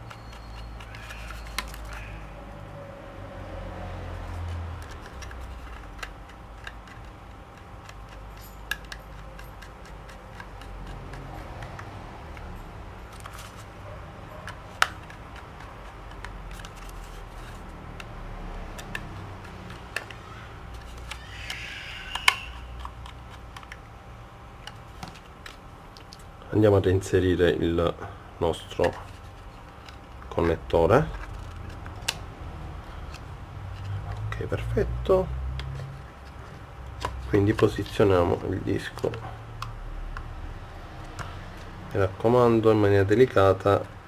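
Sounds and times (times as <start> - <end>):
brief scrape: 0.1 - 2.3, 20.8 - 23.0
small clicks and taps: 4.2 - 13.7, 14.4 - 21.2
sharp clicks: 18.8 - 23.8.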